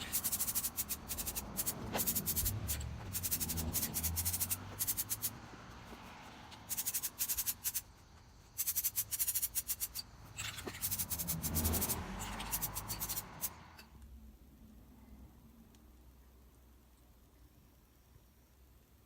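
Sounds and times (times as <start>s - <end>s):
spray can rattling: 0.0s - 5.4s, 6.6s - 7.9s, 8.5s - 13.6s
rushing noise: 0.0s - 8.0s.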